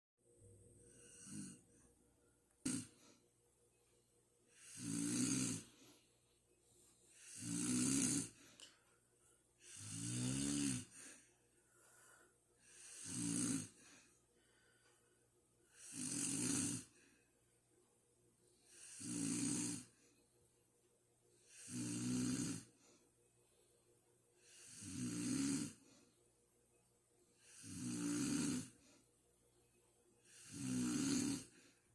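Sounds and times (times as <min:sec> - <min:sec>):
person snoring: 0:00.9 - 0:01.6, 0:02.6 - 0:03.2, 0:04.5 - 0:06.0, 0:07.1 - 0:08.6, 0:09.6 - 0:11.3, 0:12.6 - 0:14.1, 0:15.7 - 0:17.1, 0:18.7 - 0:20.0, 0:21.5 - 0:22.8, 0:24.4 - 0:25.9, 0:27.4 - 0:29.0, 0:30.2 - 0:31.8.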